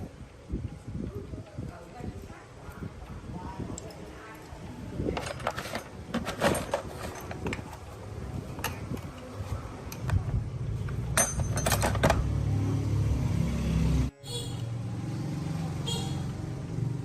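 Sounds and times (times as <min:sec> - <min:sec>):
metal parts and tools clinking: 0:05.1 - 0:07.9, 0:10.8 - 0:12.4.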